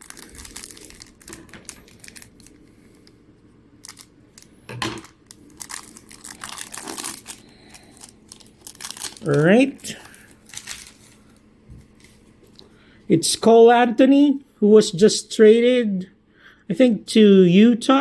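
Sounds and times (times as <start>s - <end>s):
foil wrapper crinkling and tearing: 0.0s - 3.2s, 3.8s - 12.6s.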